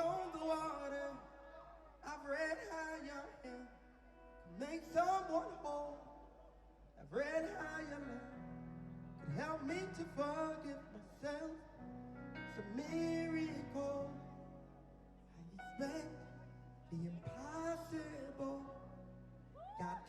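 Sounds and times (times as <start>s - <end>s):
person singing: 9.2s - 11.8s, 12.4s - 14.5s, 15.3s - 20.0s.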